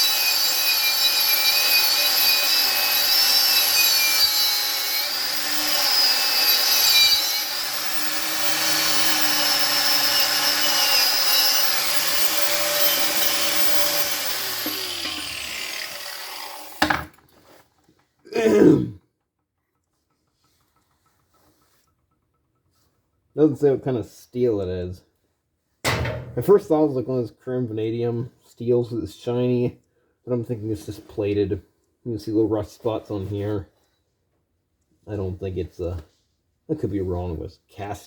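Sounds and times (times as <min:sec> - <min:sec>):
power grinder grinding steel: 0:00.0 - 0:17.1
motor spinning down: 0:07.6 - 0:16.8
knock: 0:25.9 - 0:26.4.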